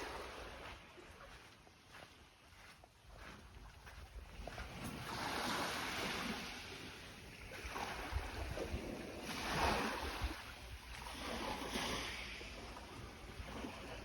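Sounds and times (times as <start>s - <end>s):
small waves washing on sand: 0.0s - 14.0s
wind on microphone: 4.2s - 14.0s.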